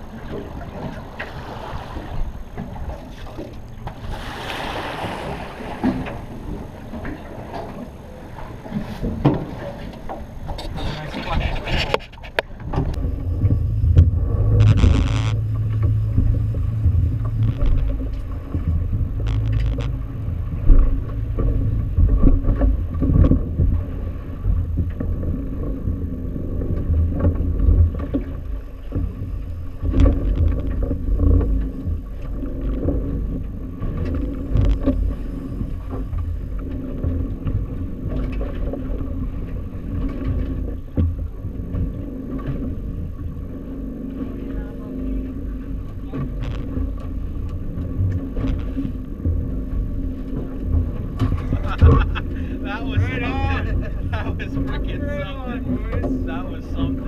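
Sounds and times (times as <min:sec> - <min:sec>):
boat motor hum: 0:00.0 - 0:57.0
low uneven rumble: 0:00.0 - 0:57.0.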